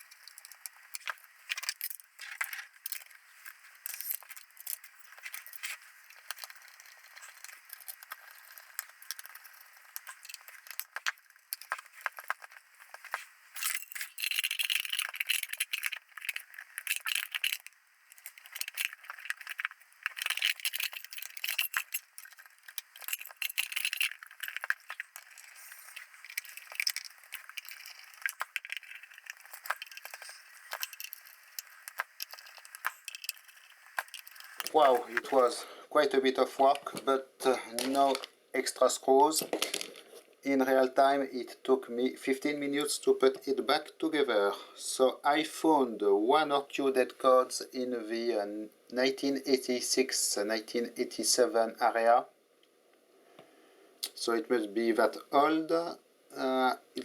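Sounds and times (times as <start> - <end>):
small metal parts and tools clinking: 0.0 - 35.5, 39.4 - 40.1.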